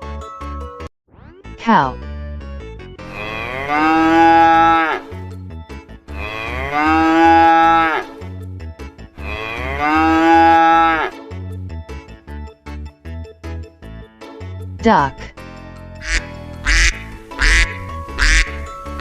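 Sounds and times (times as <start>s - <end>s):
background music with steady beat: 2.2s - 19.0s
cow mooing: 3.1s - 5.1s, 6.1s - 8.2s, 9.2s - 11.2s, 16.0s - 18.7s.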